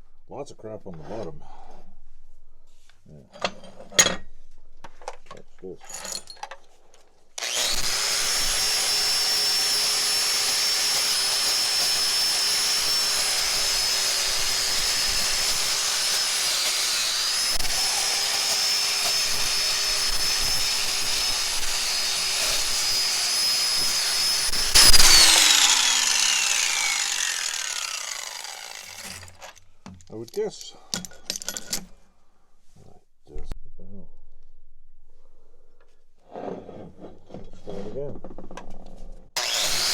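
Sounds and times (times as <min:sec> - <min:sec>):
wire wheel grinder whining: 0:07.4 - 0:29.6, 0:39.4 - 0:39.9
loud burst: 0:22.6 - 0:29.1.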